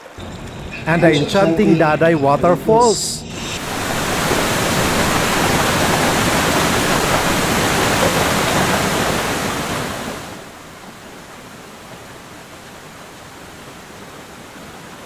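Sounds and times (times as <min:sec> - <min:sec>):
waterfall rushing: 0:01.5 - 0:10.4.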